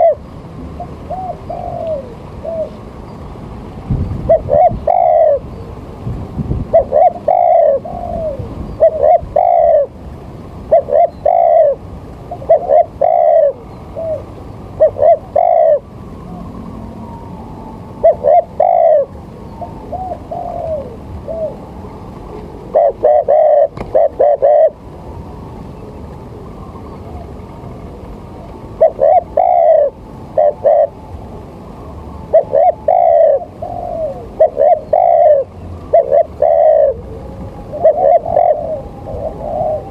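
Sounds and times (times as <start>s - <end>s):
bird calling: 0.0s - 0.2s, 0.8s - 2.9s, 4.1s - 5.8s, 6.7s - 10.0s, 10.6s - 24.9s, 25.6s - 31.1s, 32.2s - 39.9s.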